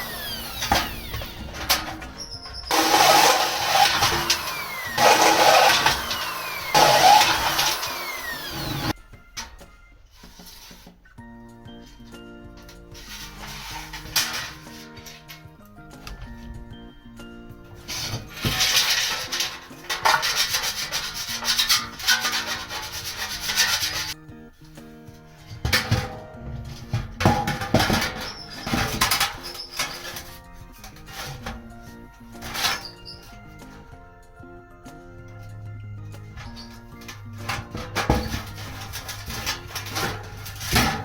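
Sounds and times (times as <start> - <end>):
electric power tool whining: 0.0 - 9.0.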